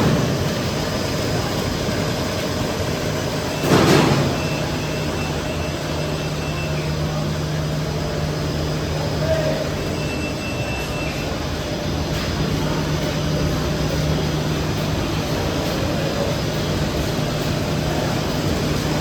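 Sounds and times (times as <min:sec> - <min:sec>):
machine mechanical noise: 0:00.0 - 0:19.0.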